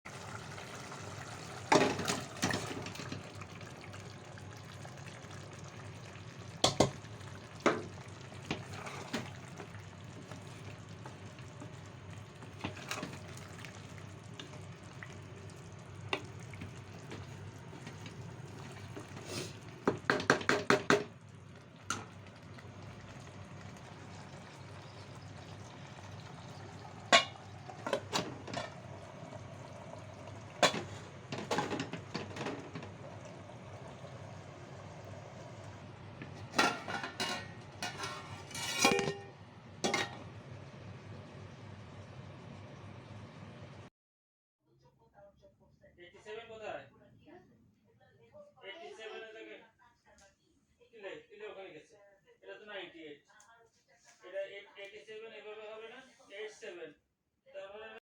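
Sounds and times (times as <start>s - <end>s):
food sizzling in a pan: 0.1s - 43.8s
metal utensil scraping a pan: 26.2s - 28.8s, 30.6s - 32.9s, 36.4s - 40.2s.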